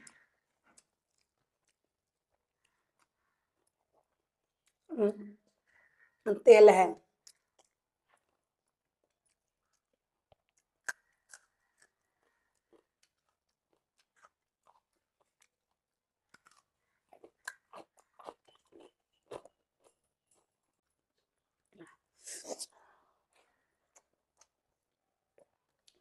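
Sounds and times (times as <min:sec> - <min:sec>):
crunching and wet chewing: 0:00.0 - 0:04.9, 0:07.2 - 0:21.4, 0:23.2 - 0:24.7.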